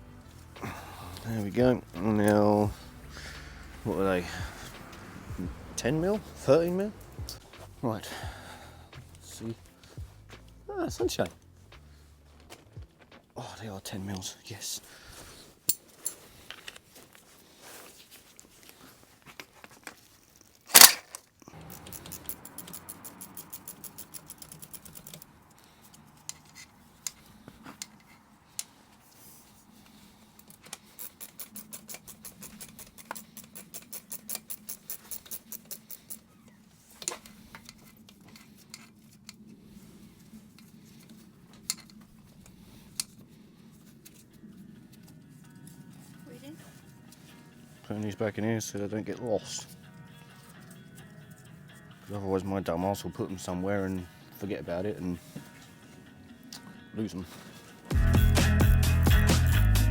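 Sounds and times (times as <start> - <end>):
hand ratchet clicking: 20.7 - 25.3, 30.4 - 36.3
metal clinks: 21.6 - 25.3, 30.5 - 36.3.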